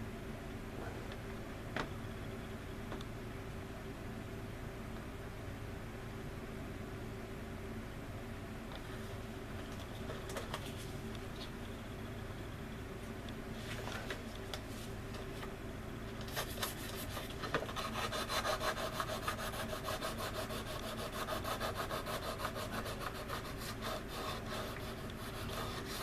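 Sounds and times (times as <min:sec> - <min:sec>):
sanding stick rasping: 0:16.7 - 0:26.0.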